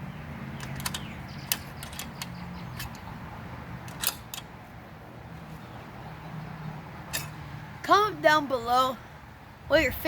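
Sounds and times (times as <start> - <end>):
hand tools clicking and clinking: 0.6 - 3.1, 3.8 - 4.5, 7.1 - 7.4.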